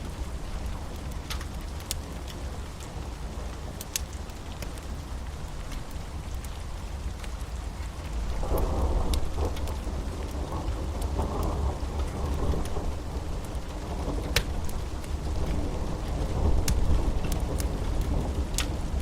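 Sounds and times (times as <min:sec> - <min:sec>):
steady rain: 0:00.0 - 0:19.0.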